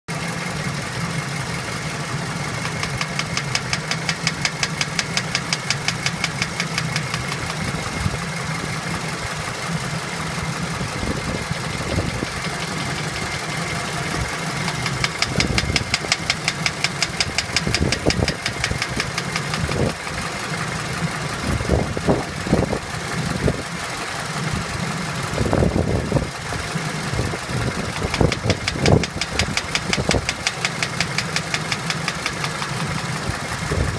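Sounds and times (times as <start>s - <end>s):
car engine running: 0.1s - 33.9s
fast regular engine knock: 2.6s - 7.9s, 11.8s - 21.2s, 27.4s - 33.9s.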